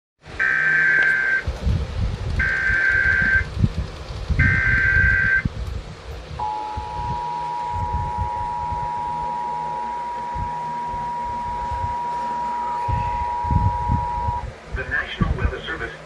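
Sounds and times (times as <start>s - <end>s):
two-tone attention signal: 0.4s - 1.4s, 2.4s - 3.5s, 4.4s - 5.4s, 6.4s - 14.4s
data tone bursts: 0.4s - 1.5s, 2.4s - 3.5s, 4.4s - 5.5s, 6.4s - 14.5s.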